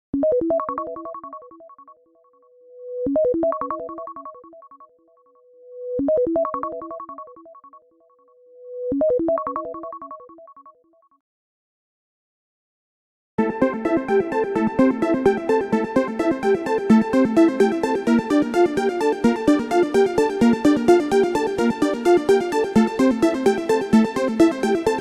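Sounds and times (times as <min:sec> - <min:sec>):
bell-like alarm tone melody: 0:13.6 - 0:25.0.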